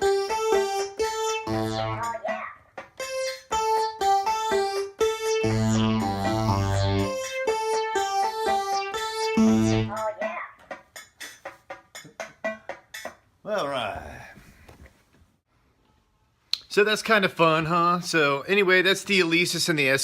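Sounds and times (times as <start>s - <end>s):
synthesizer riff of clipped notes: 0.0s - 10.4s
low held chord notes: 3.0s - 10.1s.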